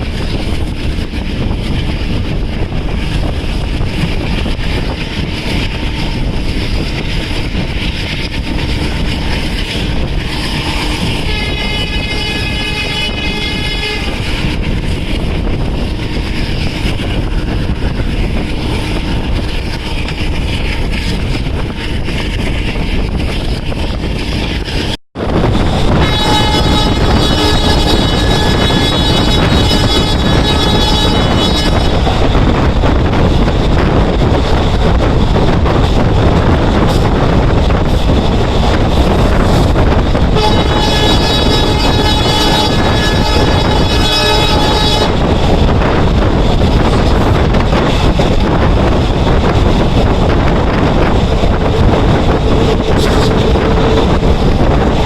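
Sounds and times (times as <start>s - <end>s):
train wheels rumbling on track: 0.0s - 55.0s
diesel locomotive horn: 9.6s - 14.7s, 25.4s - 32.5s, 40.2s - 45.7s.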